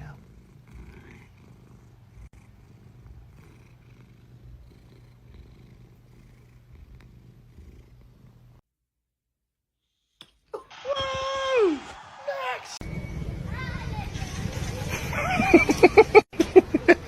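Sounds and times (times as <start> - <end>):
cat purring: 0.0 - 8.6.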